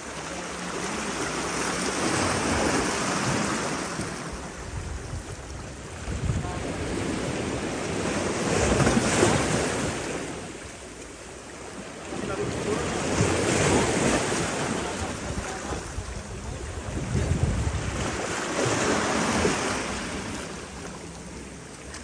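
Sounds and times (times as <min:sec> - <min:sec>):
sea waves washing: 0:00.0 - 0:22.0
wind buffeting microphone: 0:01.8 - 0:10.6, 0:12.2 - 0:20.8.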